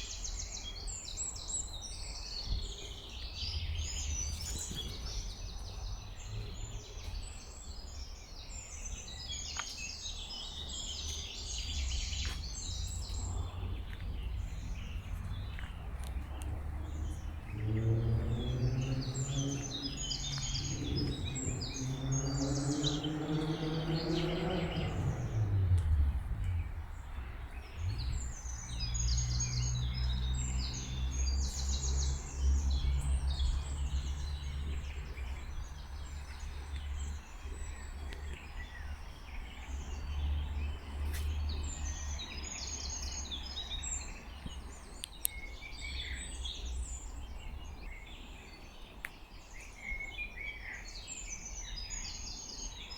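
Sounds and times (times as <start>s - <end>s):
songbirds singing and chirping: 0.0s - 52.9s
low humming drone: 11.5s - 37.2s.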